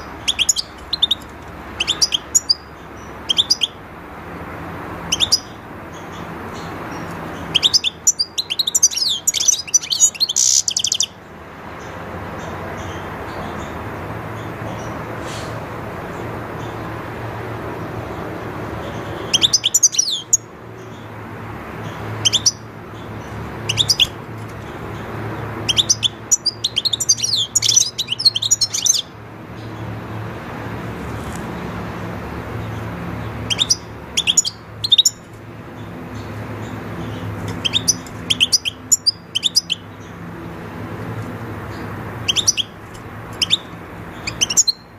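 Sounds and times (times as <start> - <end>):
goldfinch twittering: 0.0 - 3.8, 5.1 - 11.2, 18.8 - 21.1, 21.8 - 29.8, 32.6 - 40.2, 41.6 - 44.9.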